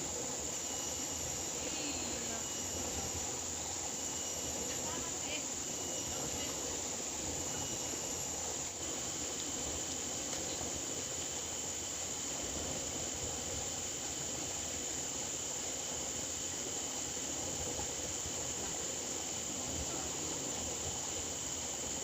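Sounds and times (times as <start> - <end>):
high-pitched insect drone: 0.0 - 11.9
even hiss: 0.0 - 22.0.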